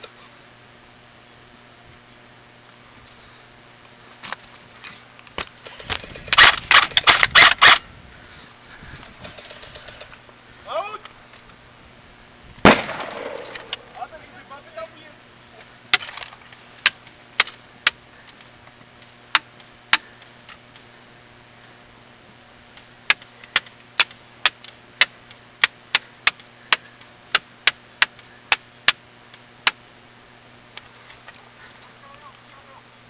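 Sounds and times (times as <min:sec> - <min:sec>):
airsoft gun shots: 0:06.4 - 0:07.8, 0:12.6 - 0:13.8.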